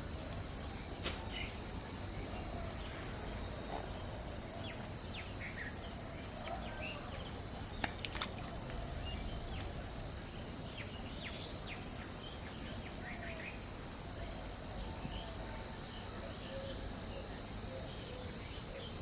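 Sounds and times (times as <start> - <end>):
outdoor background hiss: 0.0 - 19.0.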